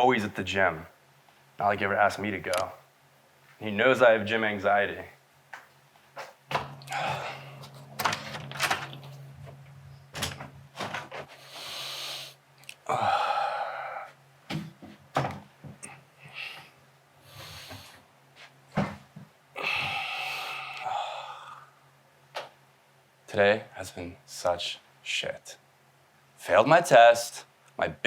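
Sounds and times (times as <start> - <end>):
steady low hum: 0.0 - 28.0
person sighing heavily: 6.8 - 7.7, 12.8 - 14.2, 19.6 - 21.8.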